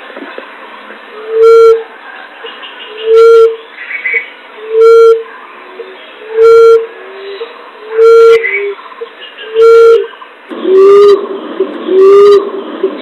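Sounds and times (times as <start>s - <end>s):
dove hooting: 2.8s - 13.0s.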